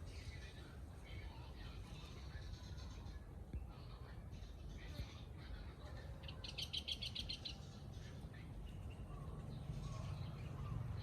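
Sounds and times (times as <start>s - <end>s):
bird chirping: 6.0s - 11.0s.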